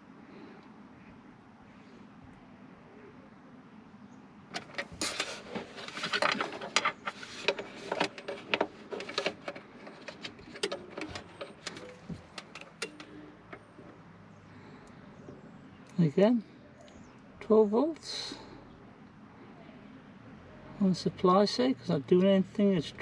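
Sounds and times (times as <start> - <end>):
hard objects clicking and clattering: 4.5 - 13.7.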